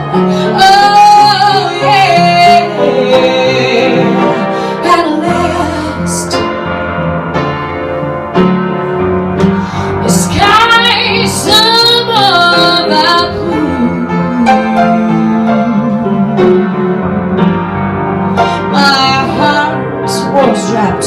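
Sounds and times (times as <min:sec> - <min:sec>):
woman singing: 0:00.0 - 0:06.4, 0:10.0 - 0:16.8, 0:18.5 - 0:21.0
piano accompaniment: 0:00.0 - 0:21.0.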